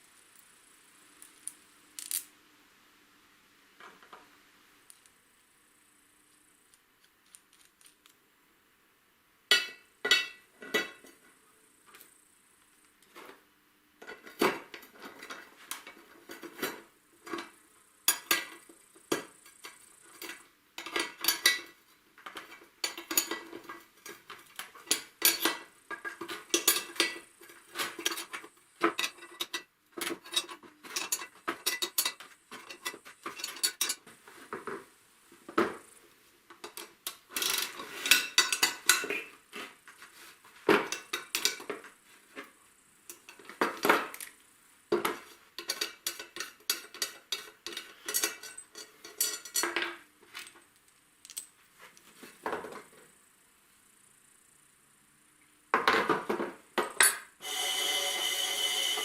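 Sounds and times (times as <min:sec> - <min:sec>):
hard parts clattering and clicking: 0:09.5 - 0:11.3, 0:14.0 - 0:34.8, 0:36.5 - 0:42.0, 0:43.1 - 0:51.6.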